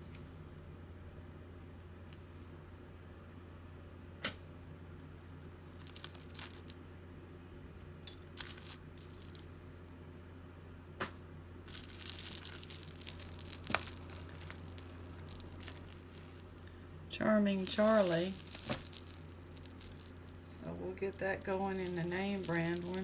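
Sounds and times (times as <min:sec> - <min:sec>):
plastic bag crinkling: 0:05.7 - 0:06.7, 0:11.7 - 0:16.7, 0:17.5 - 0:23.0
jewelry clicking: 0:11.7 - 0:16.6, 0:17.5 - 0:23.0.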